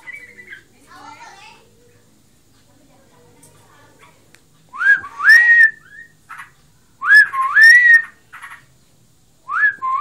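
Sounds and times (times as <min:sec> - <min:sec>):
bird whistled calls: 0:00.0 - 0:00.7, 0:04.8 - 0:06.4, 0:07.0 - 0:08.6, 0:09.5 - 0:10.0.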